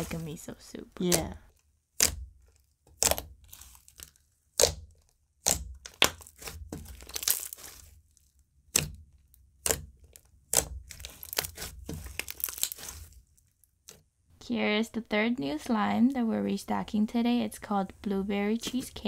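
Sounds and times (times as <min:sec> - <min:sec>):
hands squishing slime: 0:00.0 - 0:14.1
slime crackling: 0:00.0 - 0:14.1
slime popping: 0:01.0 - 0:14.0.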